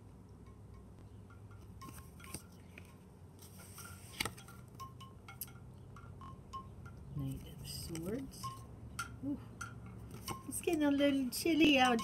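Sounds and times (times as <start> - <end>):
cards tapping and clinking: 1.6 - 3.0, 3.6 - 5.6.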